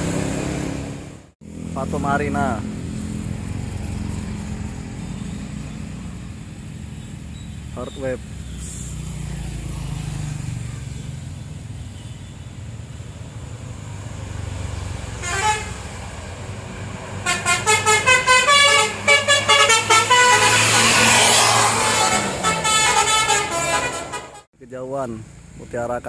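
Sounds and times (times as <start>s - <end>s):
diesel bus engine running: 9.6s - 24.5s
multi-tone musical bus horn: 15.2s - 15.9s, 17.2s - 24.5s
short horn toot: 17.3s - 24.5s.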